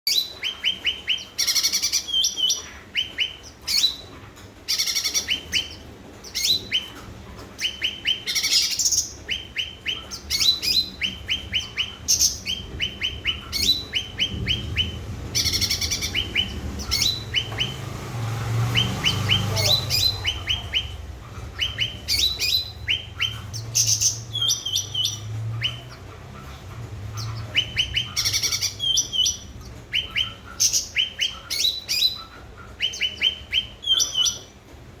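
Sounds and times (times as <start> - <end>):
songbird chirping: 0.0 - 35.0
low rumble: 11.1 - 30.4.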